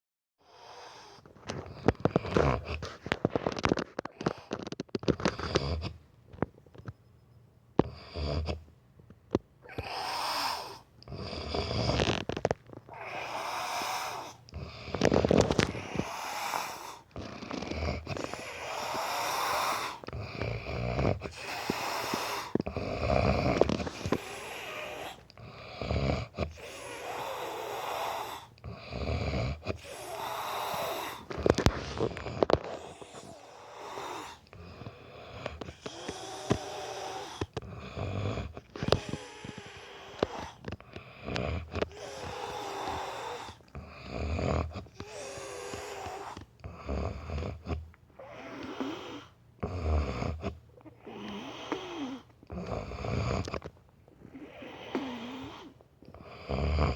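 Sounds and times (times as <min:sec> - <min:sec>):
man snoring: 0:07.8 - 0:08.7, 0:09.6 - 0:53.7, 0:54.3 - 0:56.9.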